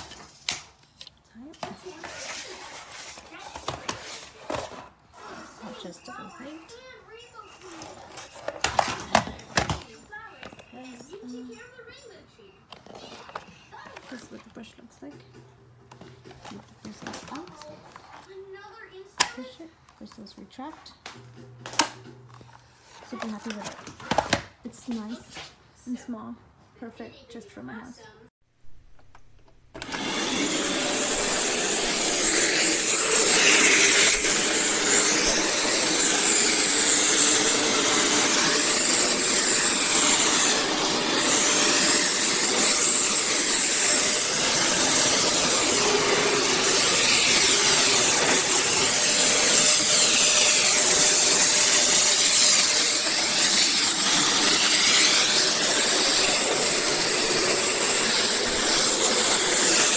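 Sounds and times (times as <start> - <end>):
vacuum cleaner running: 1.6 - 6.5, 29.7 - 59.9.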